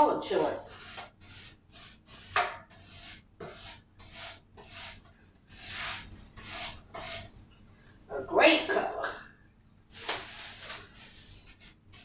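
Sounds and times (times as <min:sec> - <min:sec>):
paint brush strokes on wood: 0:00.4 - 0:07.3, 0:09.9 - 0:12.0.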